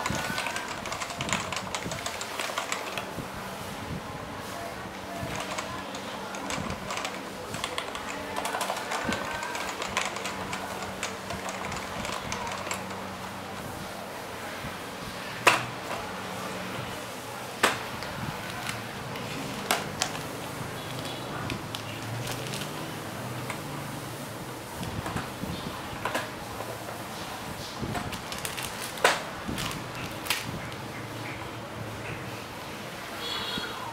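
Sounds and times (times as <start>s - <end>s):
mechanical keyboard typing: 0.0s - 3.2s, 5.0s - 13.4s, 17.6s - 23.7s.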